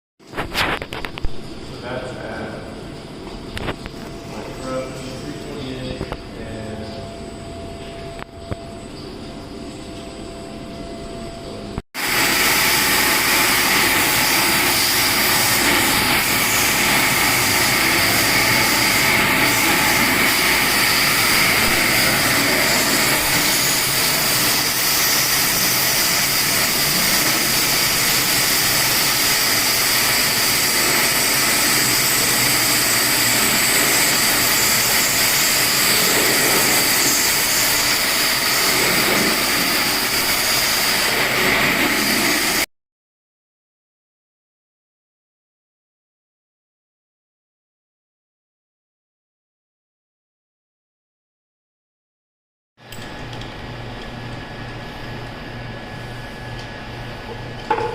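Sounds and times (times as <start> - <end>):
milling machine cutting metal: 12.0 - 42.6.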